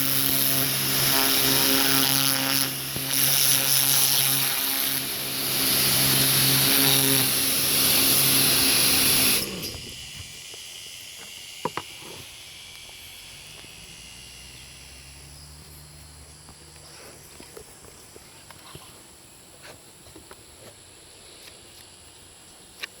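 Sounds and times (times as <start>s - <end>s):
pressure washer motor humming: 0.0s - 19.2s
pressure washer water jet hissing: 0.0s - 19.8s.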